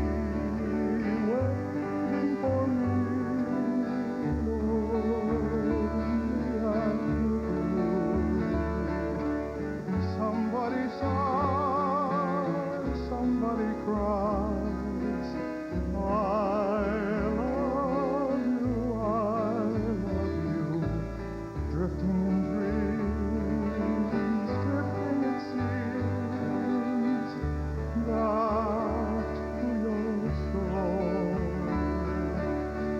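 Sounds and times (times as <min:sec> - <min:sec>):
male vocal group singing: 0:00.0 - 0:09.4, 0:21.7 - 0:32.9
steady bass notes: 0:00.0 - 0:32.9
strummed acoustic guitars: 0:00.0 - 0:32.9.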